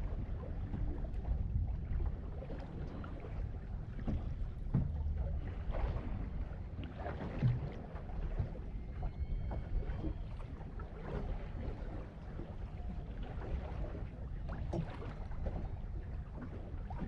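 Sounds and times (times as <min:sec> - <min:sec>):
wind and water rumble: 0:00.0 - 0:17.0
boat knocks: 0:03.6 - 0:10.8.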